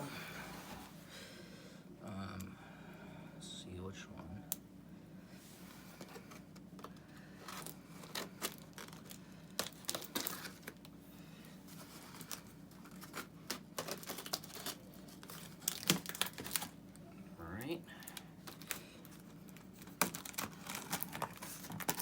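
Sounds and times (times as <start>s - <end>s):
cardboard tearing and rustling: 7.4s - 10.8s, 11.7s - 16.8s, 18.1s - 22.0s.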